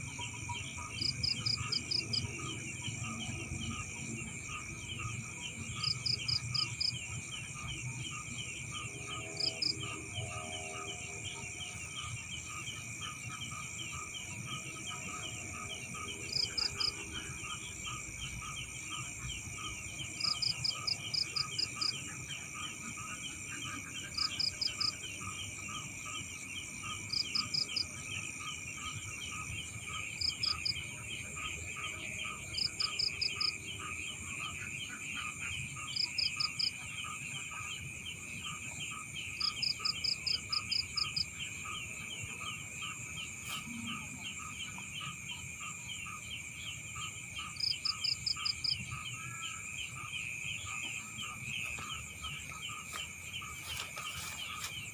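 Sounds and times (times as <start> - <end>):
fast continuous chirping: 0.0 - 54.9.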